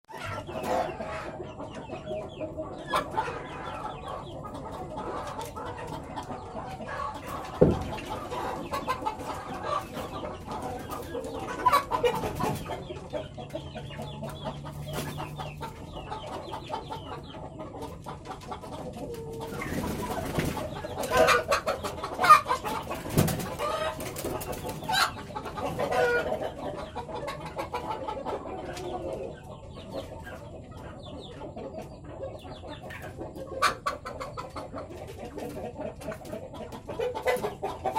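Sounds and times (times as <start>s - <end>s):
chickens clucking: 0.0s - 37.9s
sharp knocks: 7.6s - 8.0s.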